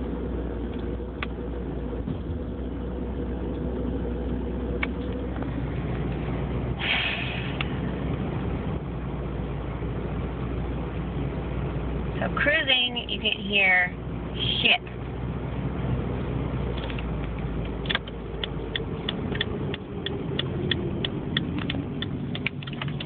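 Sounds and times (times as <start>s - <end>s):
car engine and road hum: 0.0s - 23.0s
brief hiss: 6.8s - 7.6s.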